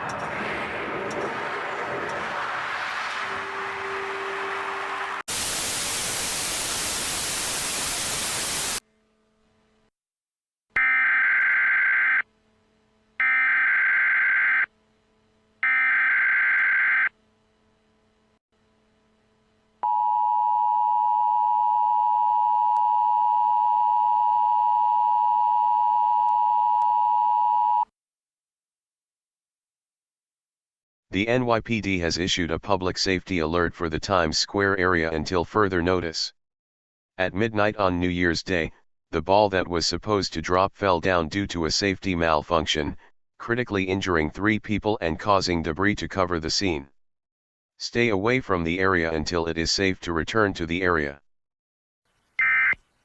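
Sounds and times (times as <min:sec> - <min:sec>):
loud static hiss: 0:04.9 - 0:08.8.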